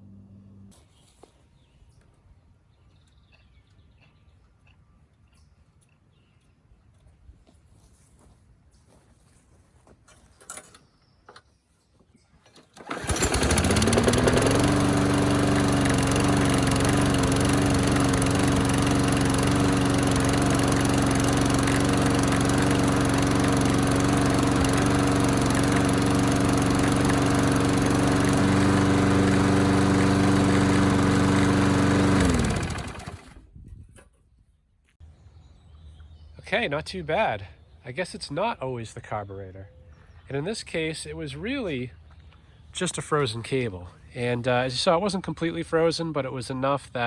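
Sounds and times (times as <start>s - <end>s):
lawn mower engine running: 12.7s - 33.5s.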